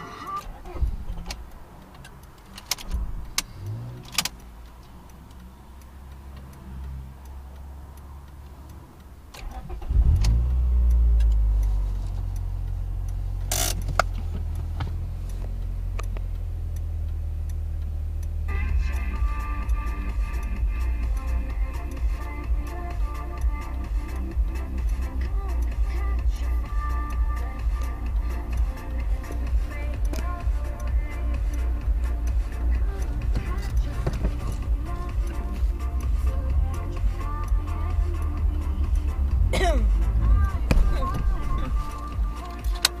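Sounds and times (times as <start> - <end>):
background music: 0.0 - 0.6, 15.9 - 43.0
car engine starting and idling: 0.0 - 43.0.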